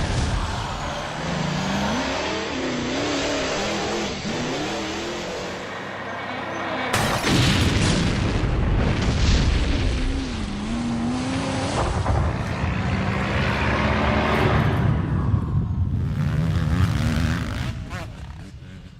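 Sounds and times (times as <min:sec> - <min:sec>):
rumbling vehicle engine: 0:10.1 - 0:18.9.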